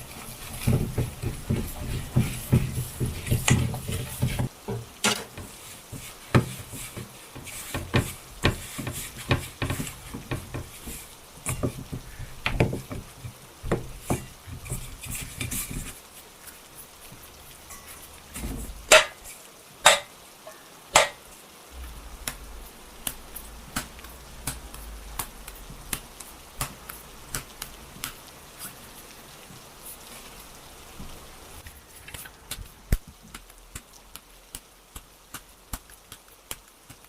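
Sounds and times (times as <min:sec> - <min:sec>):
utensils and dishes clattering: 0:17.7 - 0:21.2
sharp knocks: 0:19.8 - 0:20.1, 0:20.9 - 0:21.2
steady low hum: 0:21.7 - 0:26.0.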